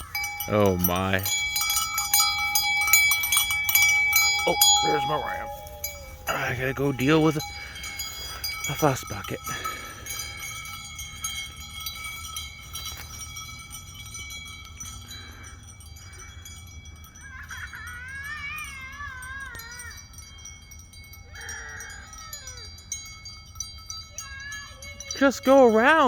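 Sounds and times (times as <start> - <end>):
high ringing: 0.0 - 26.0.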